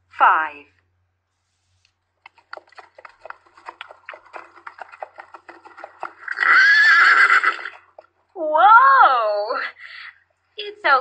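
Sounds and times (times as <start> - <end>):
horse hooves clip-clopping: 2.2 - 8.2
horse whinnying: 2.7 - 8.1.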